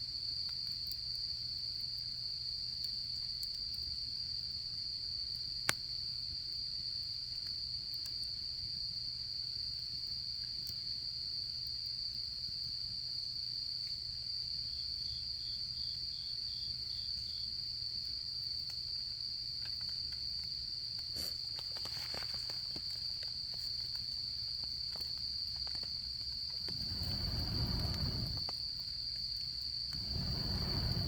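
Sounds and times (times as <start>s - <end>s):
crickets trilling: 0.2s - 31.0s
campfire wood crackling: 18.4s - 31.0s
insect chirping in short pulses: 26.4s - 28.5s, 29.6s - 31.0s
low rushing noise: 26.6s - 28.4s, 30.0s - 31.0s.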